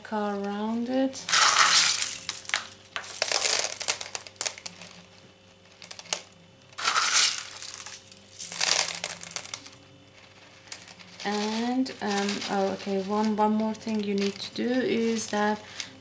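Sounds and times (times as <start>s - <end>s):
clay pebbles rattling and crunching: 1.3s - 16.0s.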